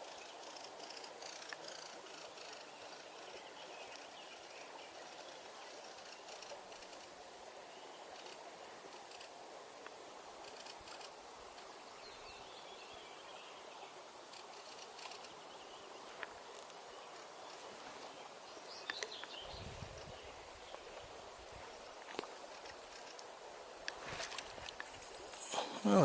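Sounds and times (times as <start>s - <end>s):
faint bird chirps: 24.8s - 26.0s.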